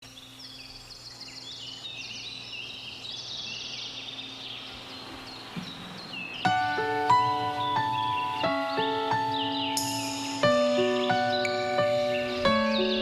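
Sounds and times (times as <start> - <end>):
songbirds chirping and trilling: 0.0 - 13.0
bell-like music notes: 9.8 - 13.0.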